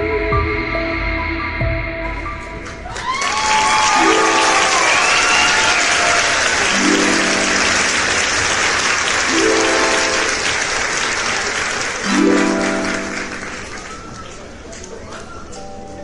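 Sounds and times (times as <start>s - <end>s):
plucked music phrase: 12.0s - 13.8s.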